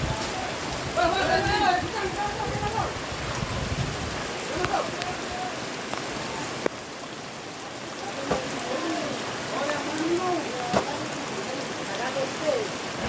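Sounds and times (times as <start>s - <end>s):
faint voices: 0.0s - 13.0s
heavy rain falling: 0.0s - 13.0s.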